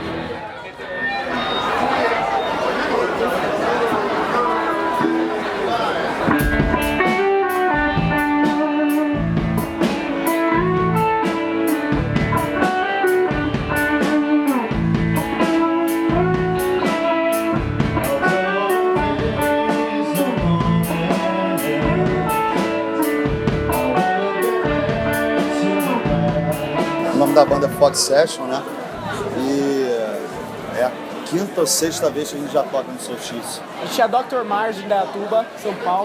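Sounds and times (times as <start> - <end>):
electric guitar: 0.0 - 0.4, 6.2 - 31.3
drum kit with cymbals: 6.2 - 29.8.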